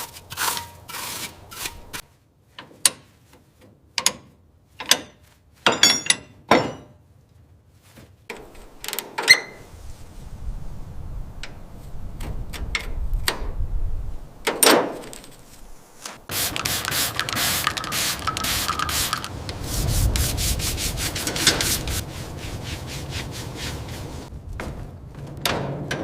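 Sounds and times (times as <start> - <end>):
sanding strokes: 0.0 - 2.0, 15.7 - 24.3
clicks and knocks: 16.1 - 19.6.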